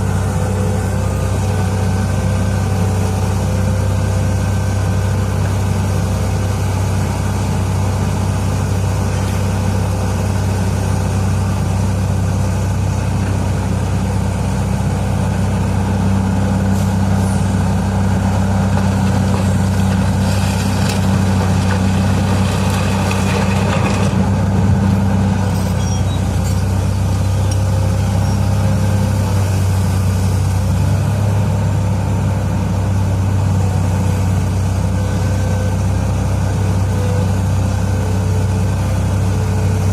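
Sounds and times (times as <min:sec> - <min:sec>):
heavy diesel engine droning: 0:00.0 - 0:39.9.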